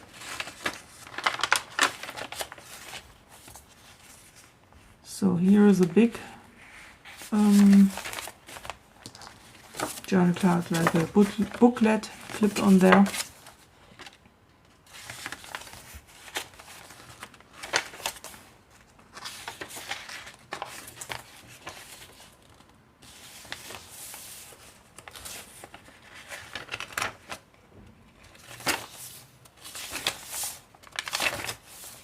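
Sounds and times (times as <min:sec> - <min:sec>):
paper rustling and crinkling: 0:00.0 - 0:04.6, 0:05.5 - 0:32.0.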